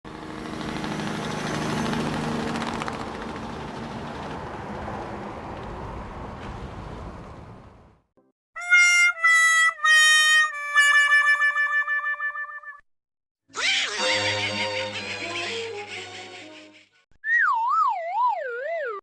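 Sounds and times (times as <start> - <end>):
vehicle engine rumbling: 0.1 - 8.1.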